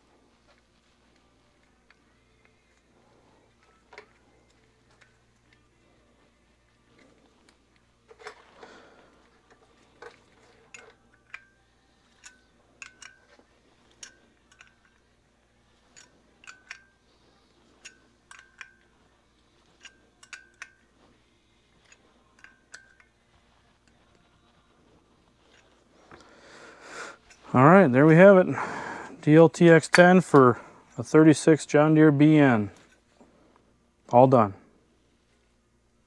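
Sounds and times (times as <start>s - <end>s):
wrench clicking on metal: 9.5s - 15.1s, 15.9s - 17.1s, 17.7s - 18.9s, 19.6s - 20.9s, 21.8s - 23.2s.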